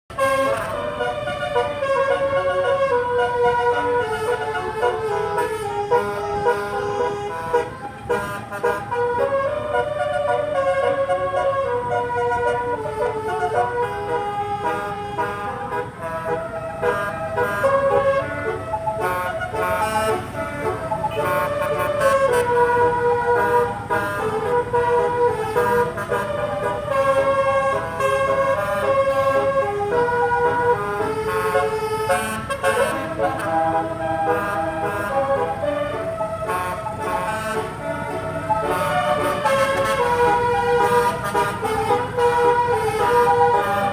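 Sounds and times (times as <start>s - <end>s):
low rumble of engines: 0.1s - 43.9s
multi-tone bus horns playing tune: 0.1s - 43.9s.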